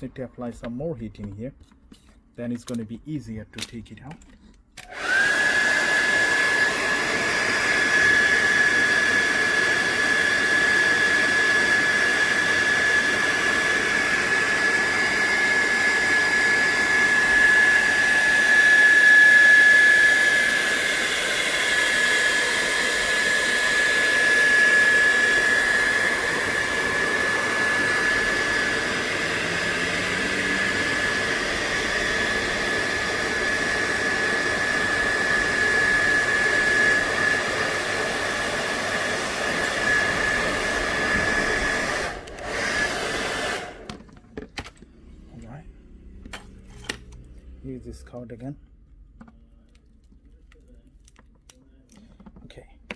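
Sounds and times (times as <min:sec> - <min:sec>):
hair dryer running: 0:04.8 - 0:45.1.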